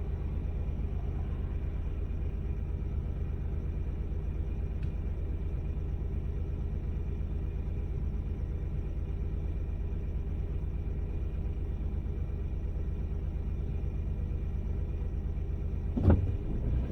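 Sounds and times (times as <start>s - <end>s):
car cabin rumble: 15.4s - 16.9s.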